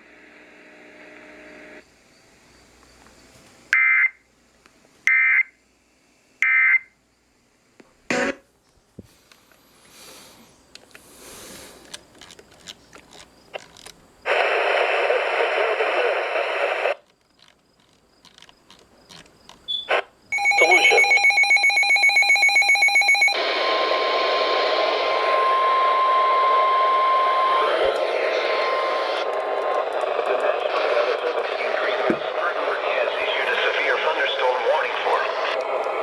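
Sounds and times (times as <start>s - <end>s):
loud hiss of noise: 9.1s - 11.9s, 14.2s - 17.0s, 23.4s - 36.0s
screechy data burst tones: 18.4s - 23.4s.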